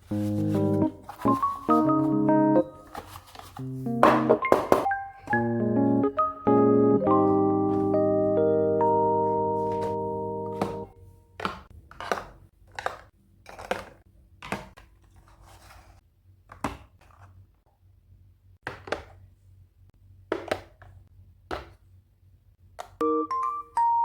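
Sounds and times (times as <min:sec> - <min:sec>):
soft rustling or scraping: 0:00.0 - 0:02.1, 0:02.8 - 0:03.7, 0:15.2 - 0:16.0
sharp knocks: 0:04.0 - 0:04.9.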